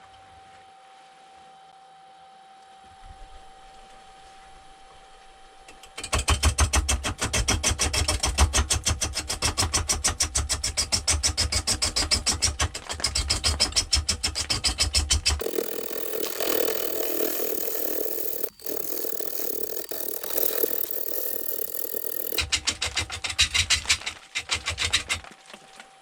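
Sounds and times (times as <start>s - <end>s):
faint lathe hum: 15.4s - 22.4s
lathe tool knocking and scraping wood: 15.4s - 22.4s.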